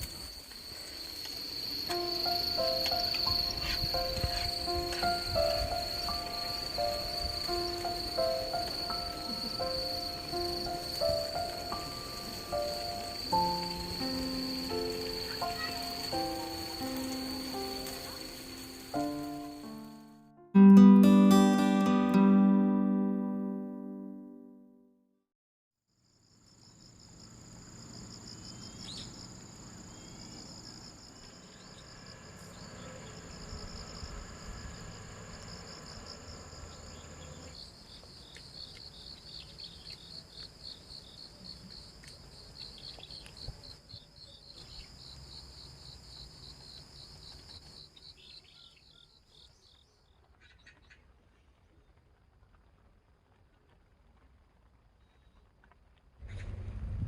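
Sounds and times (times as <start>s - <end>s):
crickets high trill: 0.0s - 20.2s, 27.2s - 37.7s
crickets pulsing trill: 0.0s - 20.2s, 26.1s - 49.5s.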